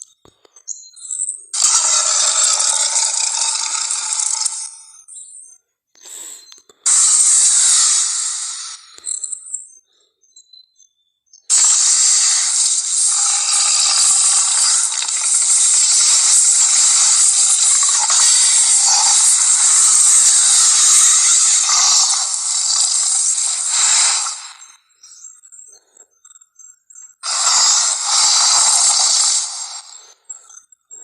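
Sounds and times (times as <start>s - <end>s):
monster hissing roar: 6.9s - 8.8s, 11.5s - 24.6s, 27.2s - 30.0s.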